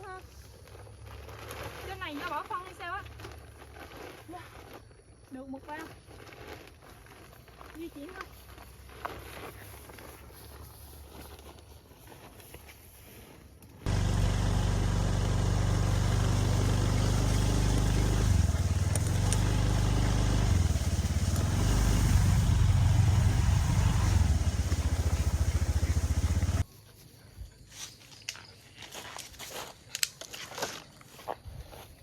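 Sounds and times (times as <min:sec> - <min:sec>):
motorbike engine running: 0:13.9 - 0:26.7.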